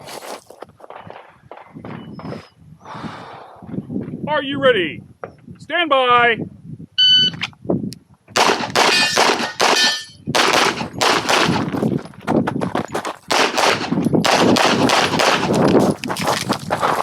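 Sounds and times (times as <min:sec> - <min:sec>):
rapid handgun fire: 0:08.4 - 0:11.6, 0:13.3 - 0:15.6
steel targets clanging: 0:08.8 - 0:10.3.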